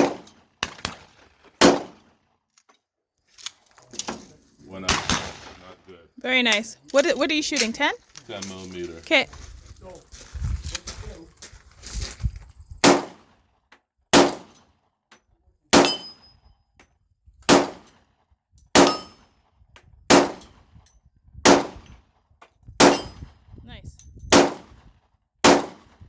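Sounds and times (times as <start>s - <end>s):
pistol shots: 0.0s - 2.2s, 4.8s - 5.7s, 12.8s - 13.4s, 14.1s - 14.6s, 15.7s - 16.2s, 17.5s - 17.9s, 18.8s - 19.2s, 20.1s - 20.5s, 21.4s - 21.9s, 22.8s - 23.2s, 24.3s - 24.8s, 25.4s - 26.0s.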